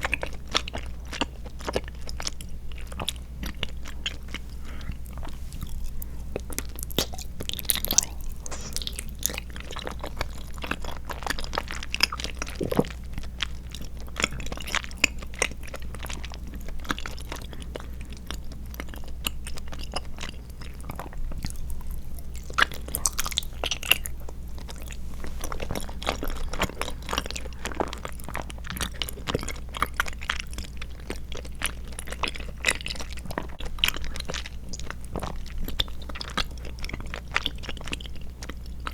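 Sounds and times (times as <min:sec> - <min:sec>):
wet chewing clicks and smacks: 0:00.0 - 0:38.9.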